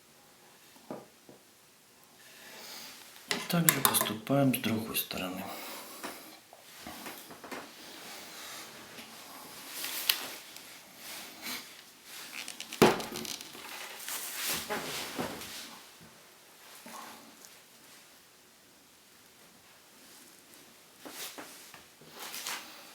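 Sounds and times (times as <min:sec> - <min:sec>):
hand tools and wire handling: 0:03.3 - 0:04.2, 0:12.2 - 0:14.8.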